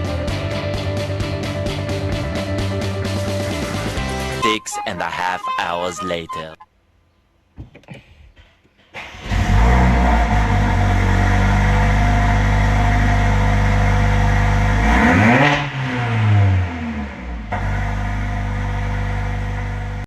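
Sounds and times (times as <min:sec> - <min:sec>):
car engine starting and idling: 0:08.9 - 0:20.0
car engine revving: 0:09.0 - 0:20.0.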